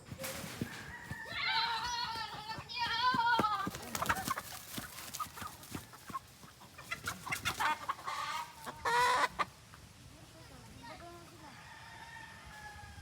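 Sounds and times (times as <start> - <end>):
chickens clucking: 0.0 - 10.0.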